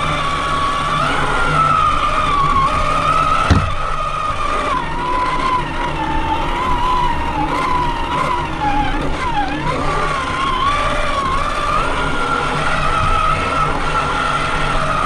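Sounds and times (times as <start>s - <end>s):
rc truck motor whining: 0.0s - 15.0s.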